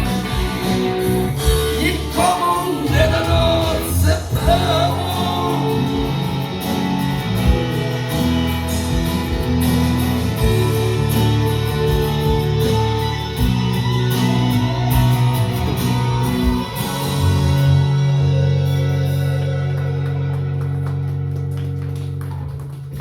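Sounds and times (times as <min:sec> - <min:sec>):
instrumental song with guitar: 0:00.0 - 0:23.0.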